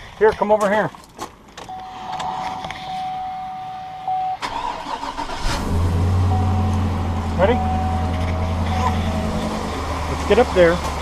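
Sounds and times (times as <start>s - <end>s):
steady electronic beep: 1.7s - 4.4s, 6.2s - 9.5s
truck engine cranking and starting: 4.4s - 11.0s.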